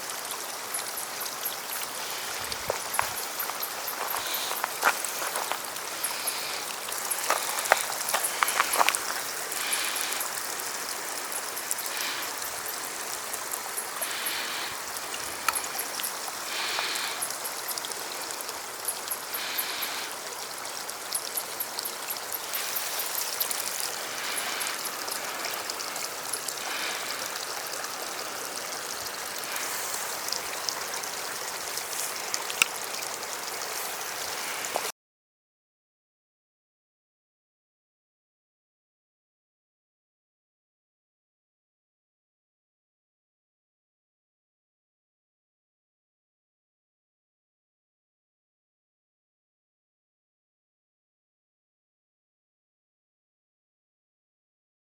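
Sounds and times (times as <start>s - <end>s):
water trickling and splashing: 0.0s - 34.9s.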